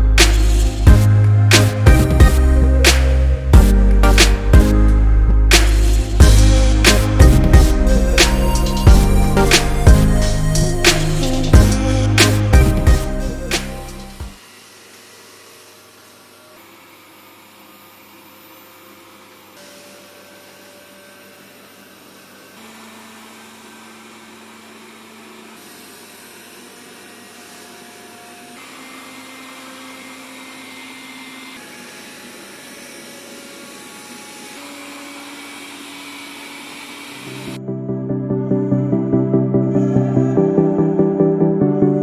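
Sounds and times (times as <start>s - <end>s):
robot vacuum cleaner whirring: 14.0s - 37.6s.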